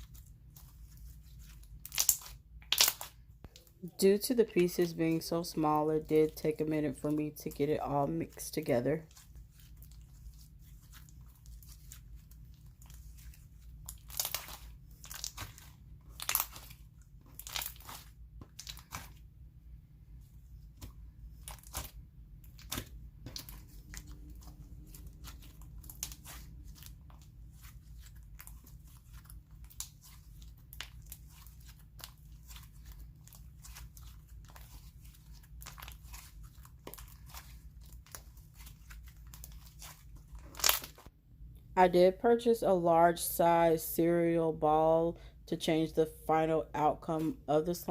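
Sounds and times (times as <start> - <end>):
slime squished by hand: 9.1 - 19.3
crunchy crackles and pops: 40.4 - 41.1.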